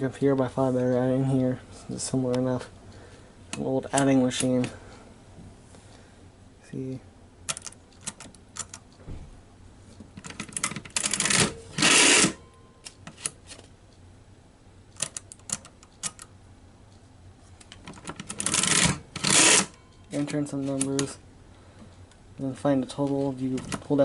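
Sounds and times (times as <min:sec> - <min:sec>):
adding machine keys clicking: 0:07.5 - 0:09.0, 0:10.1 - 0:13.4, 0:15.0 - 0:16.3.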